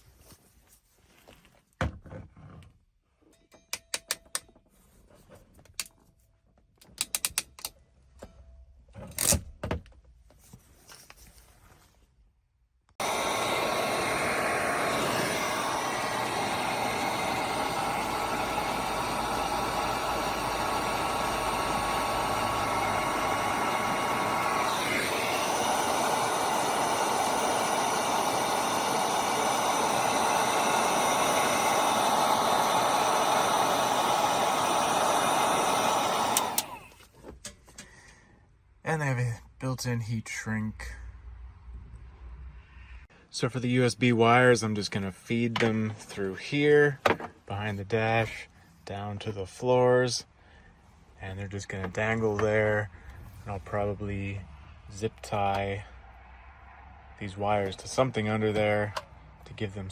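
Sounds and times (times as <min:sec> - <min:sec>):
heat gun blowing hiss: 0:13.0 - 0:37.1.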